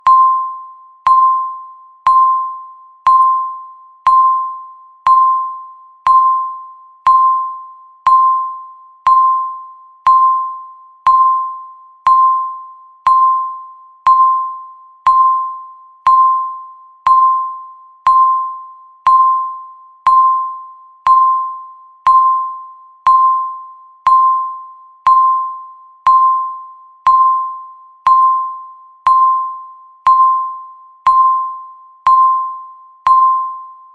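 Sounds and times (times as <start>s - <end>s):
electronic timer ticks: 27.0s - 29.3s.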